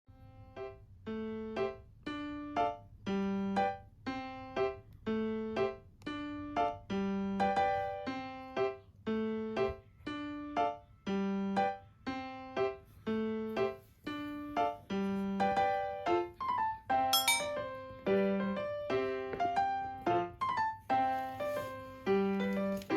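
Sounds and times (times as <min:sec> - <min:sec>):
piano-like keyboard tune: 0:00.1 - 0:22.9.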